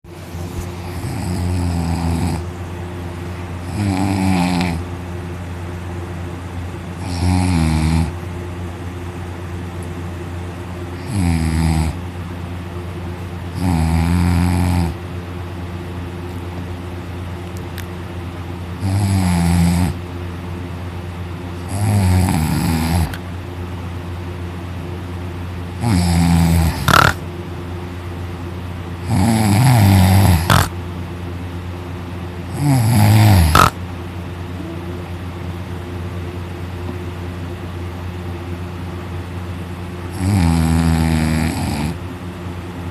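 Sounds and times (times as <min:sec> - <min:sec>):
steady hum: 0:00.1 - 0:42.9
person snoring loudly: 0:00.8 - 0:02.5, 0:03.6 - 0:04.8, 0:07.0 - 0:08.2, 0:11.0 - 0:12.0, 0:13.6 - 0:15.0, 0:18.8 - 0:20.0, 0:21.6 - 0:23.2, 0:25.8 - 0:27.2, 0:29.0 - 0:30.7, 0:32.5 - 0:33.8, 0:40.1 - 0:42.0.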